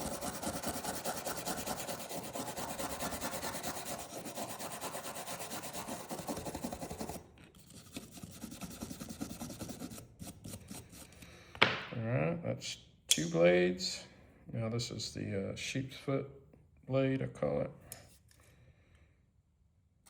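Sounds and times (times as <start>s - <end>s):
wire brush scrubbing metal blade: 0.0s - 9.0s.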